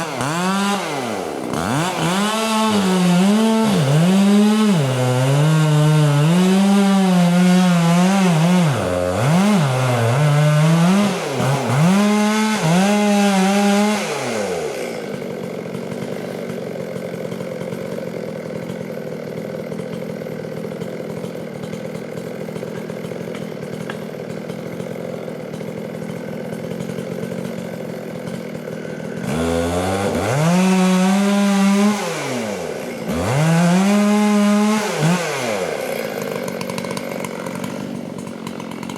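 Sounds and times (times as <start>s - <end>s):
chainsaw revving and idling: 0.0s - 38.9s.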